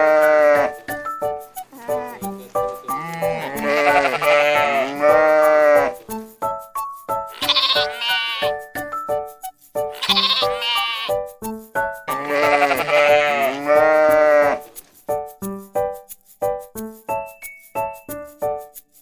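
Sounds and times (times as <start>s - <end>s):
sheep bleating: 0.0s - 0.8s, 1.7s - 6.0s, 7.3s - 8.6s, 9.9s - 11.2s, 12.1s - 14.8s
light children's music: 0.0s - 19.0s.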